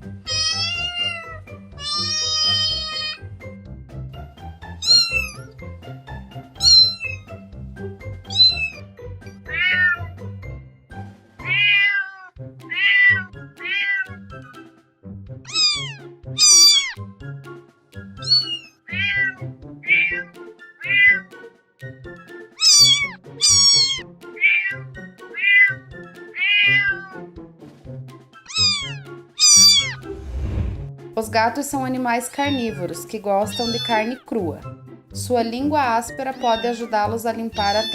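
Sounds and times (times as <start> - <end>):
soft background music: 0.0 - 37.9
cats meowing: 0.3 - 3.3, 4.8 - 5.5, 6.6 - 7.4, 8.3 - 8.8, 9.4 - 10.2, 11.4 - 14.3, 15.5 - 17.0, 18.2 - 21.4, 22.6 - 27.3, 28.4 - 30.0, 32.4 - 34.3, 36.4 - 36.9, 37.6 - 37.9.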